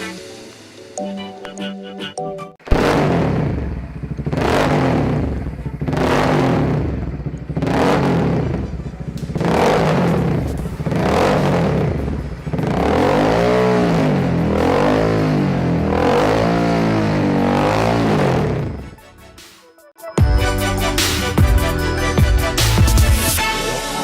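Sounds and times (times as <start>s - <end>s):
motorcycle engine revving: 2.6s - 19.0s.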